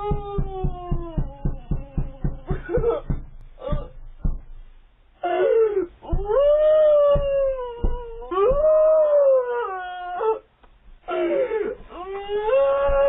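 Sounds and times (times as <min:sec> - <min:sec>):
woman wailing: 0:00.0 - 0:04.0, 0:05.2 - 0:10.4, 0:11.1 - 0:13.0
heavy thuds banging on door: 0:00.0 - 0:04.9, 0:06.1 - 0:09.0, 0:12.5 - 0:13.0.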